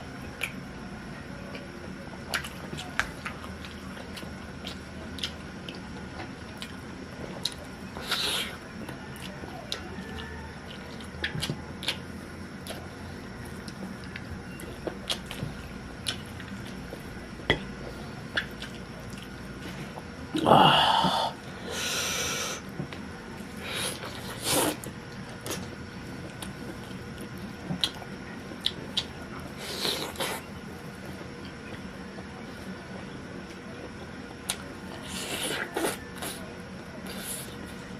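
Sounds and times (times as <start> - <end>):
chewing and lip smacking: 1.5 - 20.1, 22.8 - 32.3, 34.4 - 37.9
breathy noise: 20.3 - 22.7.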